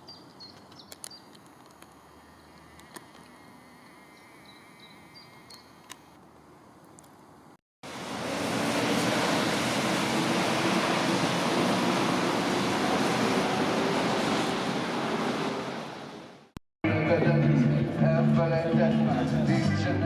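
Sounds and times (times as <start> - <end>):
rushing water: 7.9 - 16.3.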